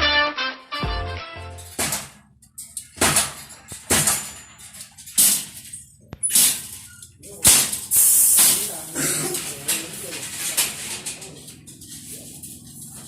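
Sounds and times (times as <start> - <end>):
spot welder zaps: 1.6 - 11.0.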